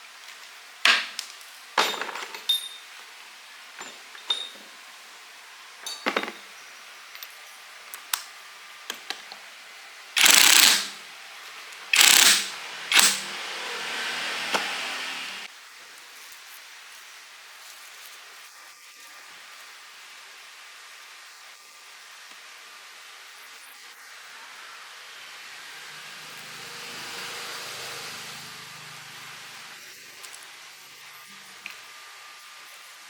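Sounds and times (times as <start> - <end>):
metal tools clinking: 1.8 - 2.9, 3.8 - 4.8, 5.8 - 6.5.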